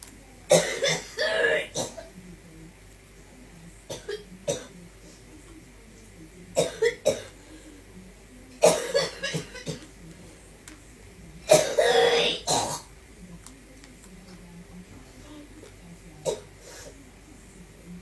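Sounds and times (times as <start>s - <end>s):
person coughing: 11.5s - 12.8s.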